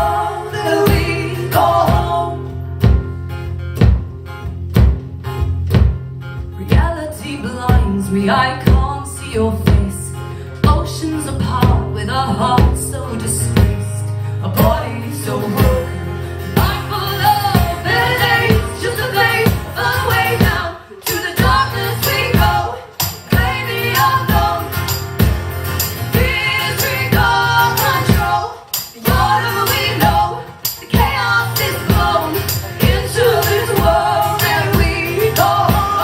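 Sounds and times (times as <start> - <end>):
live band music: 0.0 - 36.0.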